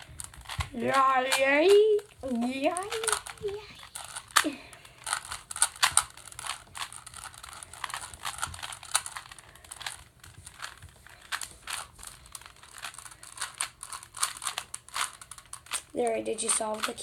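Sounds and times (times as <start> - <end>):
puzzle cube clicking: 0.0 - 17.0.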